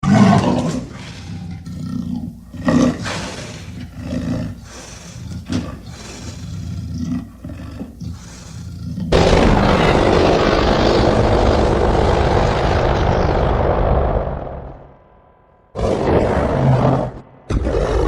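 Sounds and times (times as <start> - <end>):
dragon roaring: 9.1 - 15.0, 15.8 - 18.0.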